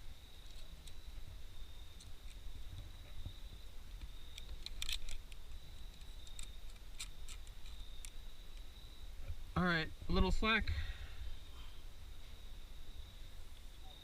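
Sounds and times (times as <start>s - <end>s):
faint high-pitched whine: 0.0s - 14.0s
climbing gear metallic clicks: 3.9s - 8.7s.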